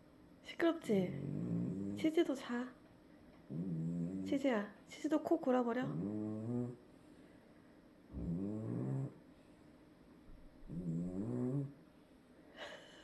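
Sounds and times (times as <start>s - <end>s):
dog snoring: 1.1s - 2.2s, 3.5s - 4.5s, 5.8s - 6.8s, 8.1s - 9.3s, 10.4s - 11.8s.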